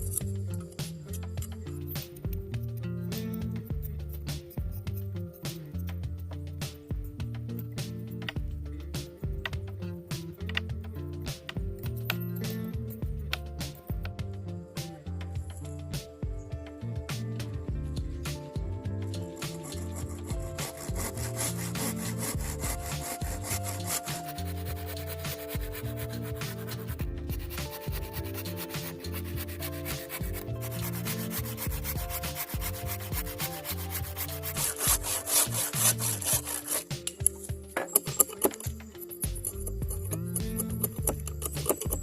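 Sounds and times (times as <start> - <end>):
background music: 0.0 - 42.0
wood sanded by hand: 19.4 - 37.5.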